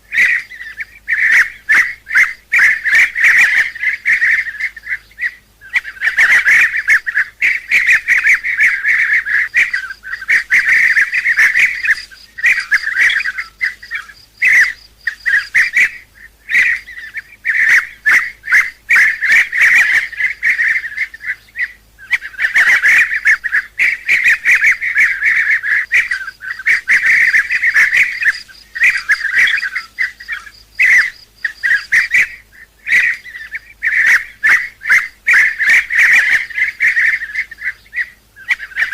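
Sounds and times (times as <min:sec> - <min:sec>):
bee-eaters calling: 0:00.0 - 0:38.9.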